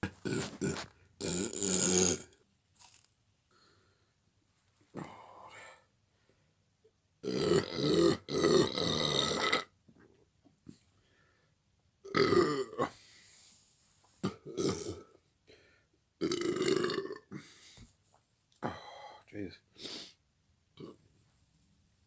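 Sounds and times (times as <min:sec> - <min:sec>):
men burping loudly: 0:00.0 - 0:02.4, 0:07.2 - 0:09.7, 0:12.1 - 0:12.9, 0:14.2 - 0:15.1, 0:16.2 - 0:17.4.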